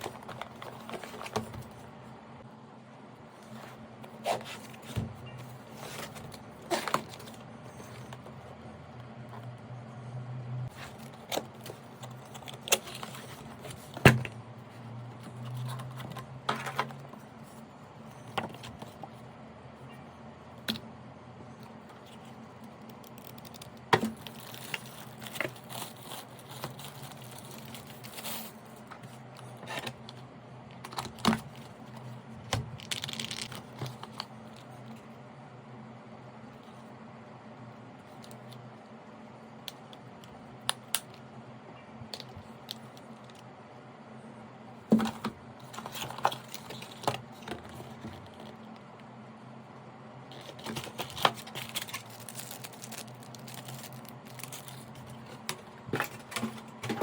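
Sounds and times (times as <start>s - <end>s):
low steady hum: 0.0s - 57.0s
packaging rustling: 21.9s - 30.1s, 30.8s - 34.6s, 44.9s - 48.8s, 50.3s - 57.0s.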